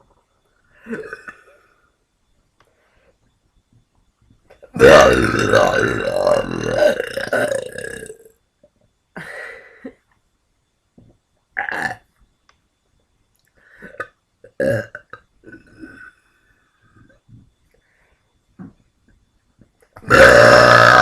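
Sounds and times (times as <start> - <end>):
person burping: 0.8 - 1.6, 4.7 - 8.3, 11.6 - 12.0, 13.8 - 16.2, 20.0 - 21.0.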